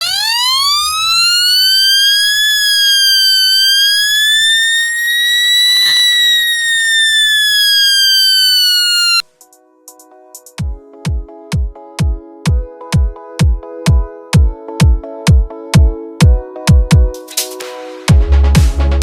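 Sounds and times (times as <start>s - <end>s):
wailing electronic siren: 0.0s - 9.3s.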